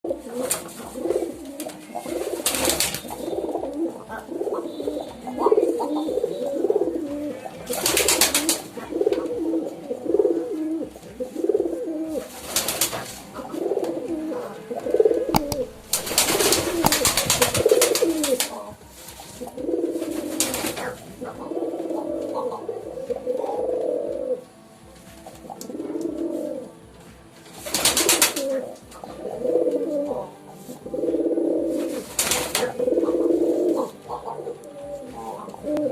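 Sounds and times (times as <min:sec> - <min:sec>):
pigeons cooing: 0:00.0 - 0:35.9
rustling: 0:15.1 - 0:21.0.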